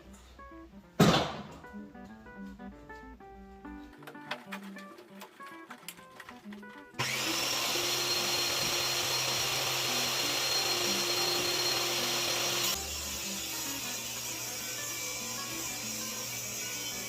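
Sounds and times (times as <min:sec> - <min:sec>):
electric power tool whining: 0:07.0 - 0:17.0.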